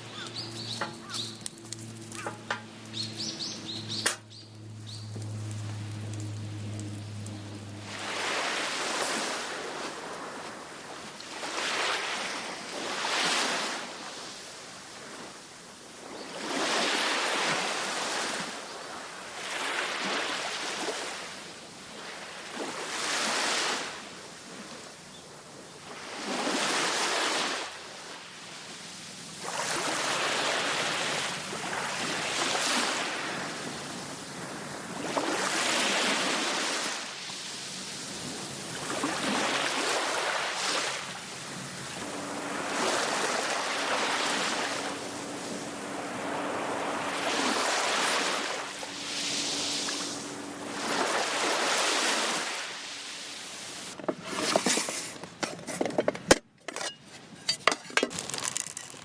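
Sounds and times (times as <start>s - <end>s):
small waves washing ashore: 0.0s - 59.0s
faint steady hum: 36.1s - 58.9s.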